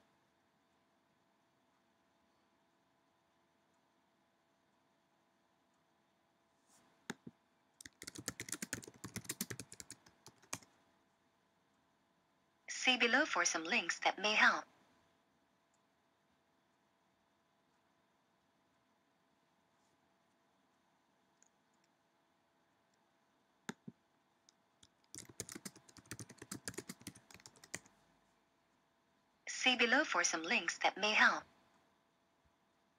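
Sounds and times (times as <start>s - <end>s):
typing on computer keyboard: 7.8s - 10.7s, 24.8s - 27.9s.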